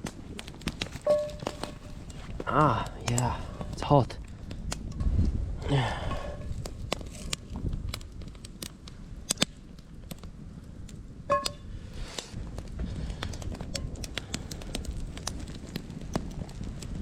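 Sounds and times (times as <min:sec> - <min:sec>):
campfire crackling and popping: 0:00.0 - 0:17.0
metallic ring of a pan: 0:01.0 - 0:01.8, 0:11.3 - 0:11.6
low rumble: 0:01.2 - 0:08.6.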